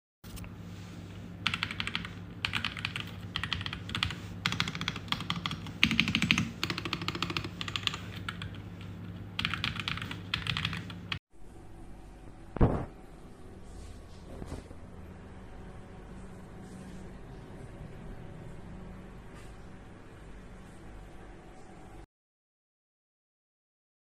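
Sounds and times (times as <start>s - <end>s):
mechanical keyboard typing: 1.4s - 11.2s.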